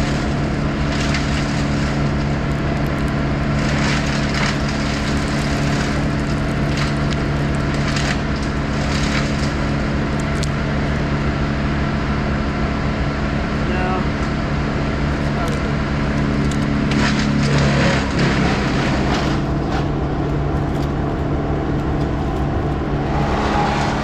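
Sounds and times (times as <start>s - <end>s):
wood and branches cracking: 0.0s - 11.0s, 15.1s - 23.0s
crane engine running: 0.0s - 24.0s.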